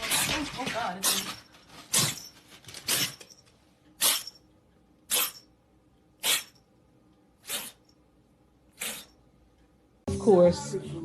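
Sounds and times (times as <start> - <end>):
pet animal sneezing: 2.9 - 3.2, 4.0 - 4.4, 5.1 - 5.5, 6.2 - 6.6, 7.4 - 7.9, 8.7 - 9.2.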